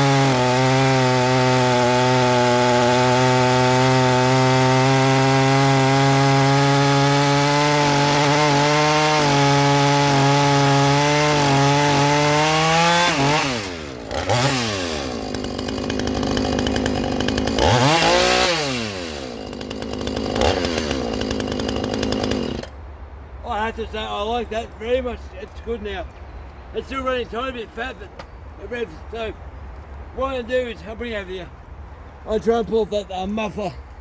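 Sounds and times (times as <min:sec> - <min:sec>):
chainsaw cutting and revving: 0:00.0 - 0:22.8.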